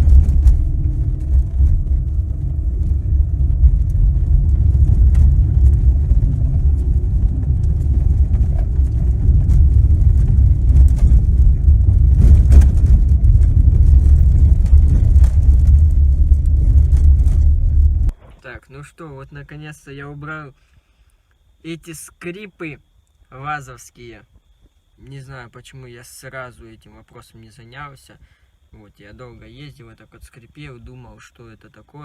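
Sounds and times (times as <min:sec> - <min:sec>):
suspension knocking over bumps: 0:00.0 - 0:18.2
low road rumble: 0:00.0 - 0:18.7.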